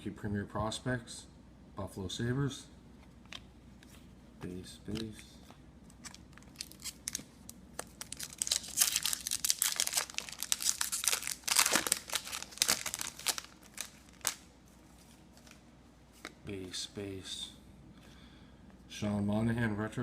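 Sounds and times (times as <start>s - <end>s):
wrapper tearing and crinkling: 6.0s - 14.5s.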